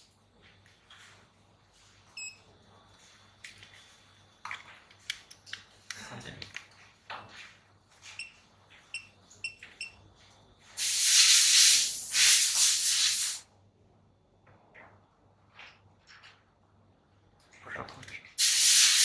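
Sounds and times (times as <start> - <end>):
loud pressurized gas hiss: 10.8 - 13.4, 18.4 - 19.0.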